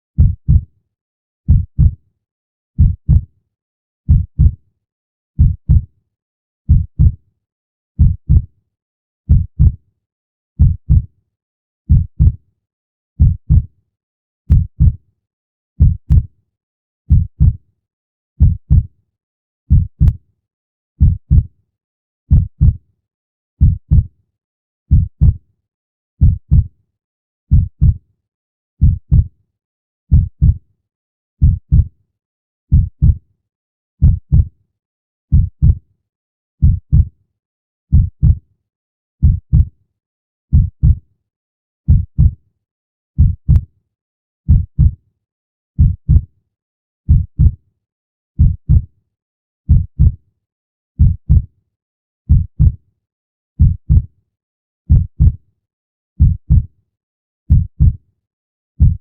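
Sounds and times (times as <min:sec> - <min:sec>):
heartbeat thumps: 0:00.2 - 0:00.6, 0:01.5 - 0:02.0, 0:02.8 - 0:03.2, 0:04.1 - 0:04.6, 0:05.4 - 0:05.8, 0:06.7 - 0:07.2, 0:08.0 - 0:08.4, 0:09.3 - 0:09.8, 0:10.6 - 0:11.0, 0:11.9 - 0:12.4, 0:13.2 - 0:13.6, 0:14.5 - 0:15.0, 0:15.8 - 0:16.2, 0:17.1 - 0:17.6, 0:18.4 - 0:18.8, 0:19.7 - 0:20.2, 0:21.0 - 0:21.4, 0:22.3 - 0:22.8, 0:23.6 - 0:24.0, 0:24.9 - 0:25.4, 0:26.2 - 0:26.7, 0:27.5 - 0:28.0, 0:28.8 - 0:29.3, 0:30.1 - 0:30.6, 0:31.4 - 0:31.9, 0:32.7 - 0:33.2, 0:34.0 - 0:34.4, 0:35.3 - 0:35.8, 0:36.6 - 0:37.1, 0:37.9 - 0:38.4, 0:39.2 - 0:39.7, 0:40.5 - 0:41.0, 0:41.9 - 0:42.3, 0:43.2 - 0:43.6, 0:44.5 - 0:44.9, 0:45.8 - 0:46.2, 0:47.1 - 0:47.5, 0:48.4 - 0:48.8, 0:49.7 - 0:50.1, 0:51.0 - 0:51.4, 0:52.3 - 0:52.7, 0:53.6 - 0:54.0, 0:54.9 - 0:55.3, 0:56.2 - 0:56.6.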